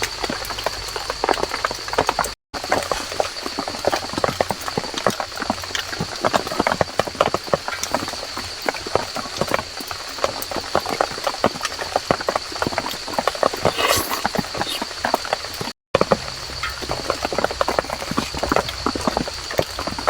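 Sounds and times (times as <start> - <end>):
raindrops dripping on leaves: 0.0 - 12.6.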